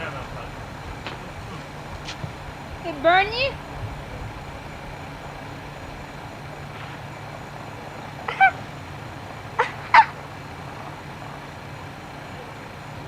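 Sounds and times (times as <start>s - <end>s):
low hum: 0.0s - 13.0s
steady hiss: 0.0s - 13.0s.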